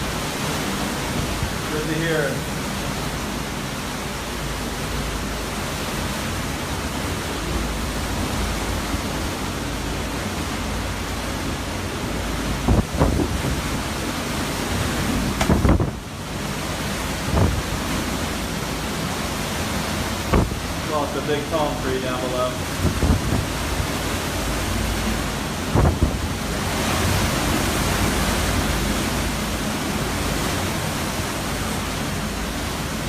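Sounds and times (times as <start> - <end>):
hurricane wind and rain rushing: 0.0 - 33.0
sharp gusts or knocks: 12.6 - 13.8, 14.8 - 16.1, 17.2 - 17.8, 20.2 - 20.8, 25.7 - 27.3.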